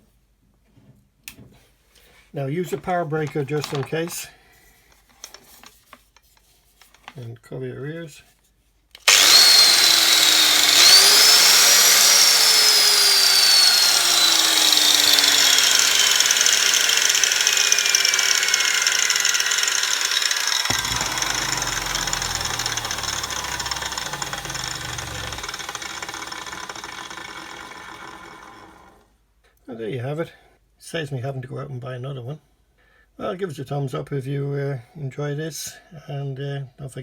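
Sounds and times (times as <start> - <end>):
angle grinder whine: 9.0 - 29.0.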